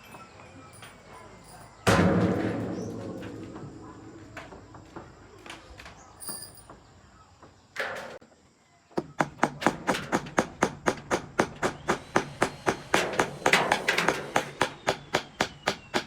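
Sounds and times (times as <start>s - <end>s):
hammer strikes: 9.0s - 16.0s.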